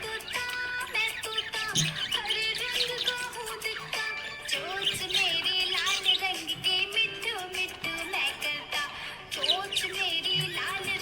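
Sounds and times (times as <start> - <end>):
budgerigar chirping and warbling: 0.0 - 6.5, 9.4 - 11.0
background music with held tone: 0.0 - 11.0.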